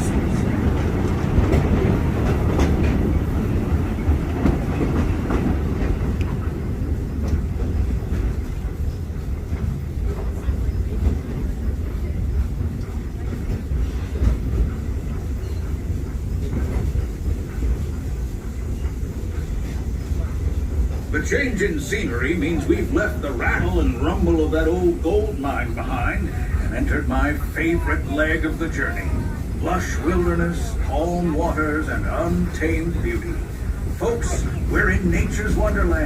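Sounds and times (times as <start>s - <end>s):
wheels clickety-clack: 0.0s - 25.3s
train rolling on track: 0.0s - 36.0s.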